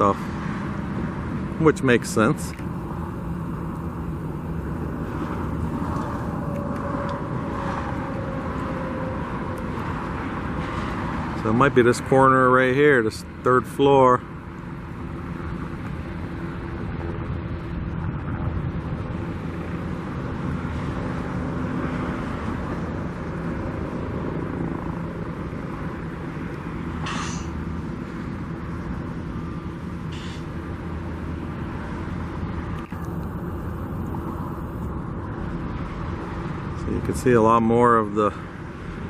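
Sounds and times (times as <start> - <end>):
engine idling rumble: 0.0 - 10.6
brief hiss: 27.0 - 27.5.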